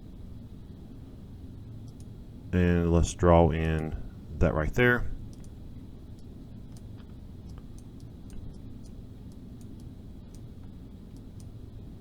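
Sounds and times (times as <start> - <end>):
low background hum: 0.0 - 12.0
computer mouse clicks: 1.8 - 2.1, 5.3 - 11.6.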